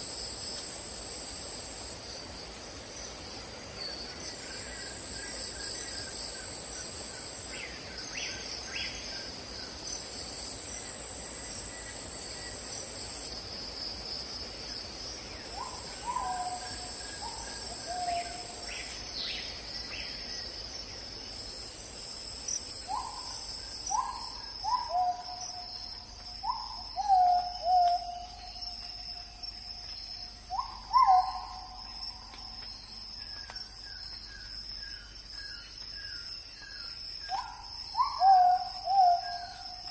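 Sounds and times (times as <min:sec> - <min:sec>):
bird calling: 0:30.5 - 0:31.8.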